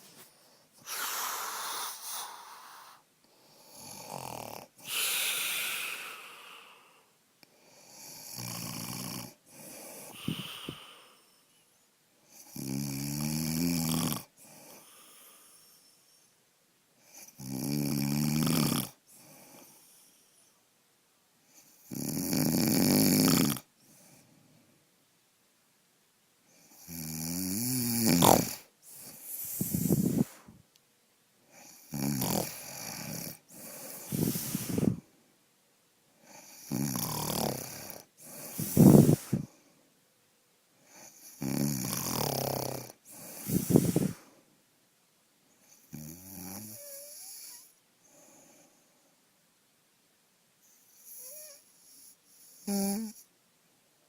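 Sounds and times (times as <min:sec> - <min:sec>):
man snoring: 0:00.8 - 0:06.9, 0:07.8 - 0:11.2, 0:12.4 - 0:15.6, 0:17.1 - 0:19.7, 0:21.8 - 0:23.7, 0:26.7 - 0:30.4, 0:31.6 - 0:35.0, 0:36.4 - 0:39.5, 0:41.0 - 0:44.2, 0:45.9 - 0:47.7, 0:51.0 - 0:53.2.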